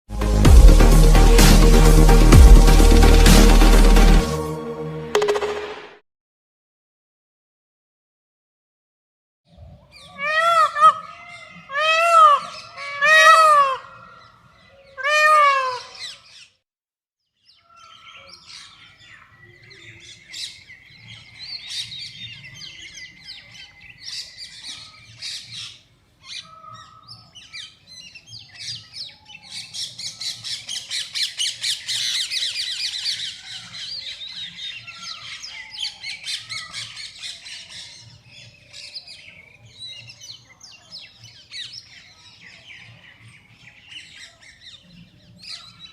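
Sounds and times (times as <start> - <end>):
peacock wailing calls: 9.9 - 16.4
small birds chirping: 17.3 - 45.9.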